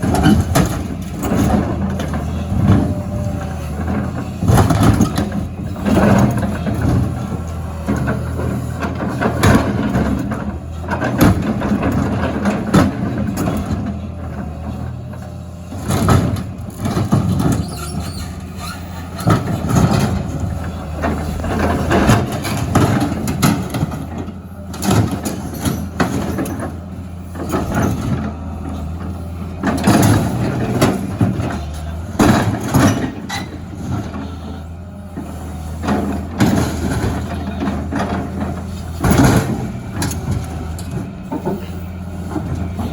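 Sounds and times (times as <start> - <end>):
diesel excavator running: 0.0 - 42.9
metal dumpsters clanking and banging: 0.0 - 42.9
metal squealing: 17.5 - 19.2.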